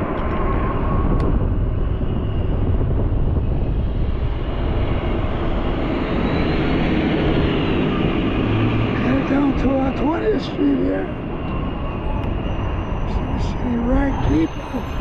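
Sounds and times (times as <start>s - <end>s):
wind rushing over microphone: 0.0s - 15.0s
faint road noise: 4.2s - 15.0s.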